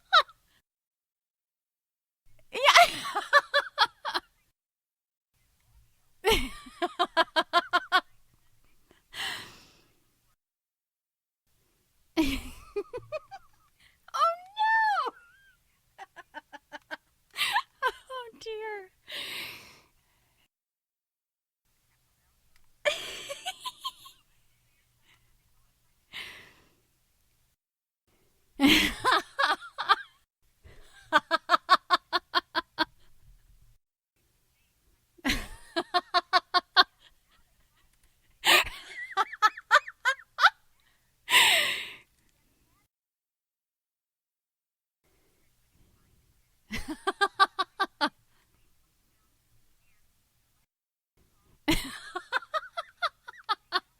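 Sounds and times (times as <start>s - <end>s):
woman laughing: 0.0s - 0.4s, 2.6s - 4.3s, 6.2s - 8.1s, 12.2s - 18.9s, 22.9s - 24.2s, 28.6s - 30.1s, 35.2s - 37.1s, 38.4s - 40.6s, 46.7s - 48.1s, 51.7s - 53.9s.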